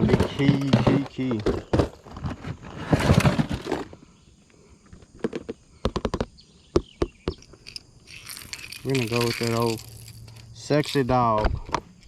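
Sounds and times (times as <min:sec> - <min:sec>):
fishing tackle clicking: 0:07.5 - 0:10.5.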